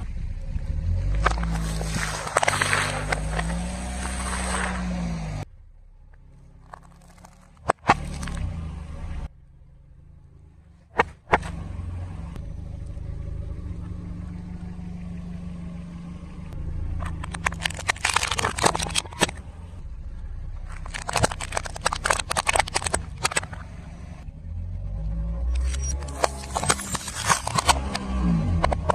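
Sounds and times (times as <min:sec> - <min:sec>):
car engine running: 0:00.0 - 0:28.9
tyre crushing objects: 0:01.1 - 0:04.9, 0:17.0 - 0:19.4, 0:20.7 - 0:23.7
sharp crack: 0:01.1 - 0:05.4, 0:16.9 - 0:19.8, 0:20.6 - 0:24.0.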